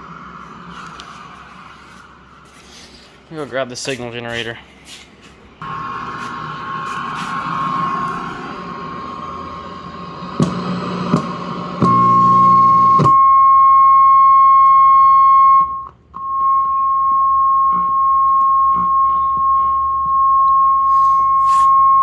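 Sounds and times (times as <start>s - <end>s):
clicks: 10.4s - 12.2s
high test tone: 10.4s - 22.0s.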